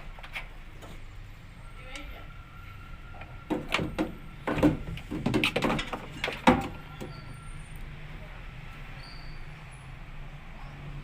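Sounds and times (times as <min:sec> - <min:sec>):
hard objects knocking and clattering: 0:03.4 - 0:07.2.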